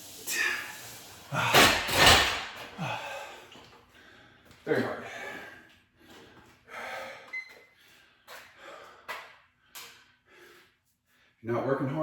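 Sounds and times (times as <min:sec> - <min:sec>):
man breathing hard: 0:02.7 - 0:11.4.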